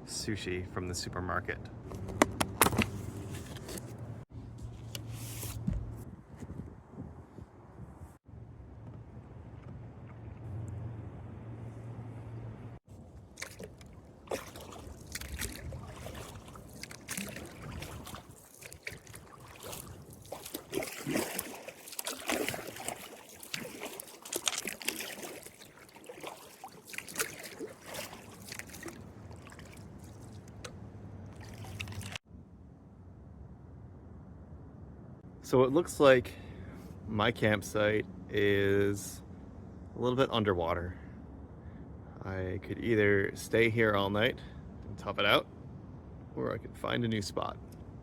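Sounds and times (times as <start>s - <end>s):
paddle splashing in water: 12.9s - 30.7s, 31.3s - 32.2s
water drips and trickles: 13.3s - 32.2s.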